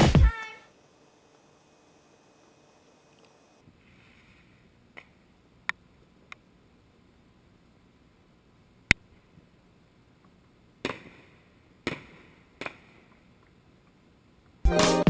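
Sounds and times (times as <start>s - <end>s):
electronic music: 14.7s - 15.0s.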